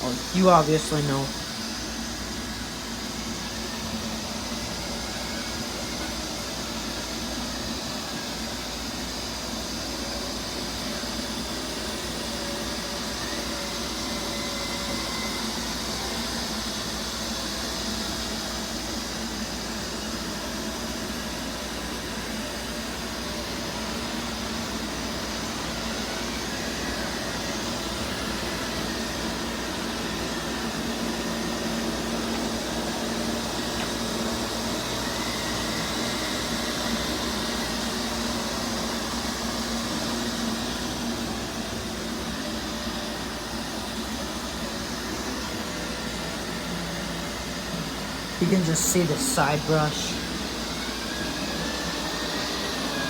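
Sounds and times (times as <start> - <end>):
robot vacuum cleaners whirring: 23.4 - 48.4.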